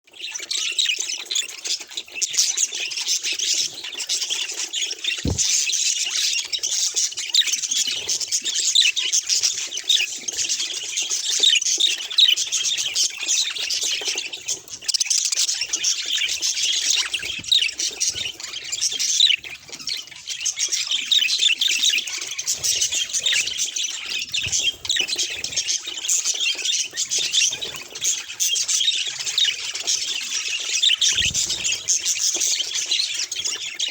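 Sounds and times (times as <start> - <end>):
brief knock: 5.3 - 5.6.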